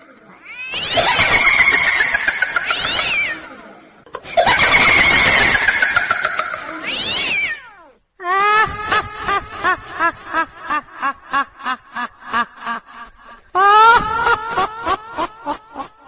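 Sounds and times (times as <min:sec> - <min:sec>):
cackling ghost laugh: 0:00.7 - 0:07.2, 0:08.4 - 0:16.0.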